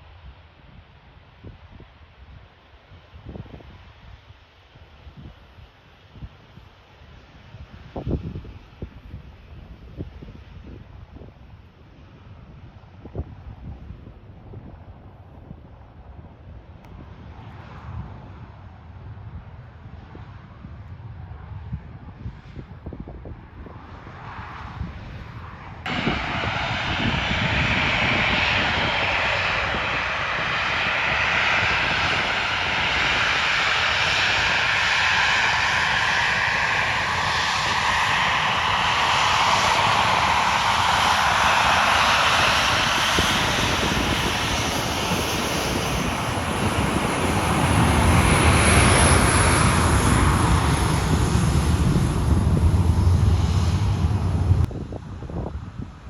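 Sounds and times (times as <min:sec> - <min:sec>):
aircraft engines running: 0:00.0 - 0:56.0
deep low rumble: 0:25.6 - 0:55.7.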